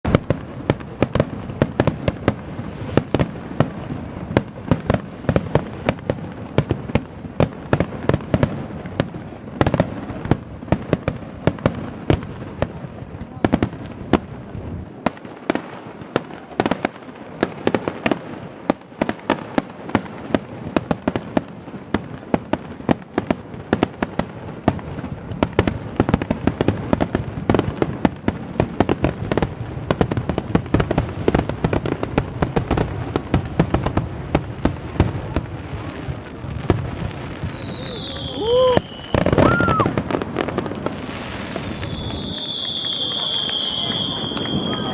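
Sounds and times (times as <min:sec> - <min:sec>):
fireworks bangs and crackles: 0:00.0 - 0:44.9.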